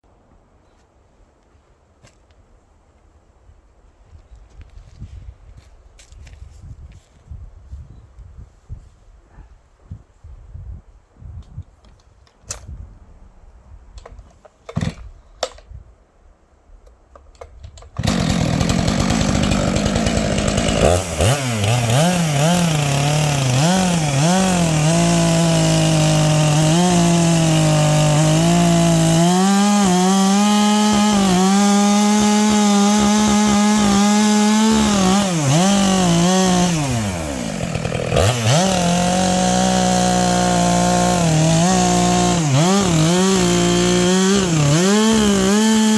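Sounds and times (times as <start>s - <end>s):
chainsaw cutting wood: 14.7s - 15.1s, 17.9s - 45.9s.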